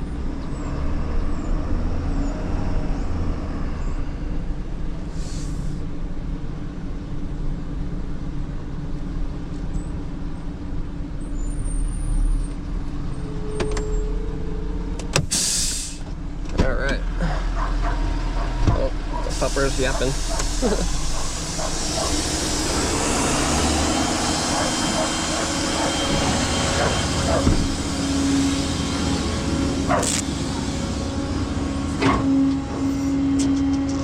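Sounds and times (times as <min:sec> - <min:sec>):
truck engine running: 0:04.8 - 0:34.0
air hiss: 0:05.1 - 0:05.8, 0:15.3 - 0:16.1, 0:19.3 - 0:32.0.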